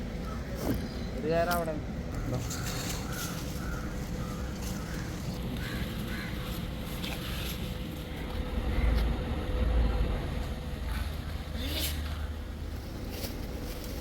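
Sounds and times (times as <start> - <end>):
crows cawing: 0.2 - 0.6, 2.1 - 9.2, 11.5 - 12.6
low rumble: 3.6 - 14.0.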